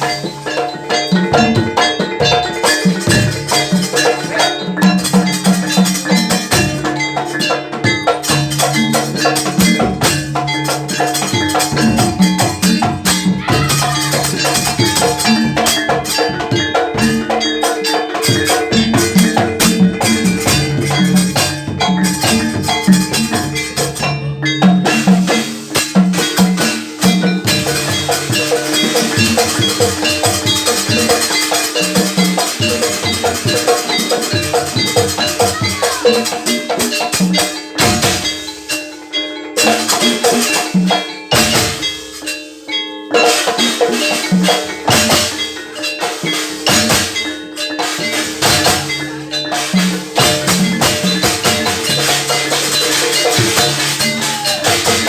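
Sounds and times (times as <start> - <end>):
struck percussion ensemble: 0.0 - 55.0.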